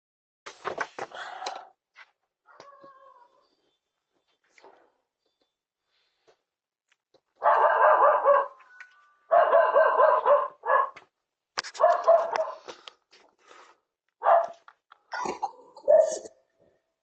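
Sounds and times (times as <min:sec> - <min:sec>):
dog yelping: 0:07.4 - 0:08.6, 0:09.3 - 0:11.0, 0:11.8 - 0:12.6, 0:14.2 - 0:14.6, 0:15.8 - 0:16.2.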